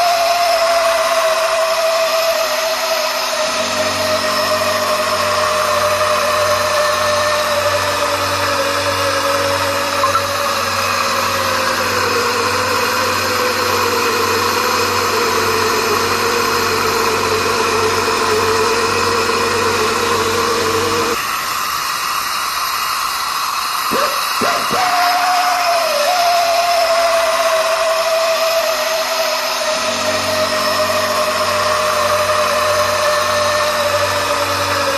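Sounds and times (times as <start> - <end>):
machine motor whine: 0.0 - 34.9
quick pitch swoops: 10.0 - 10.4.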